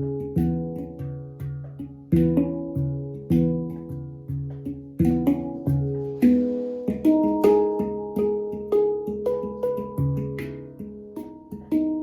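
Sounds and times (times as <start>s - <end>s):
plucked string instrument: 0.0s - 12.0s.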